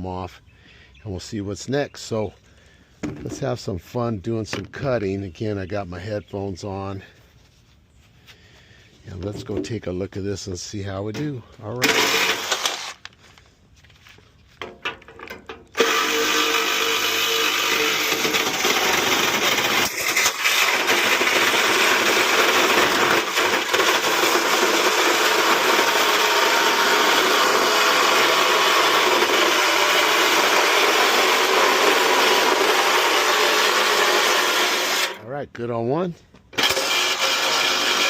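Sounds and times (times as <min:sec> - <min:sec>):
power tool cutting metal: 0:11.8 - 0:13.0, 0:15.8 - 0:35.2, 0:36.6 - 0:38.0.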